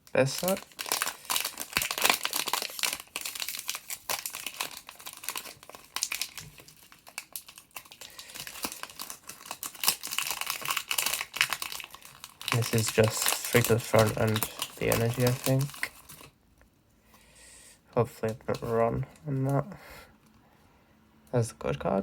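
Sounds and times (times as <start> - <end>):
foil wrapper crinkling: 0.0 - 16.4.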